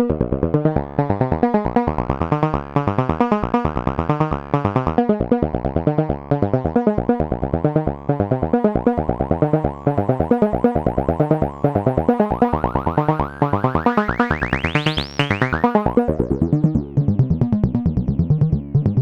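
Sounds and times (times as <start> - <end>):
synthesizer plucked notes: 0.0 - 19.0.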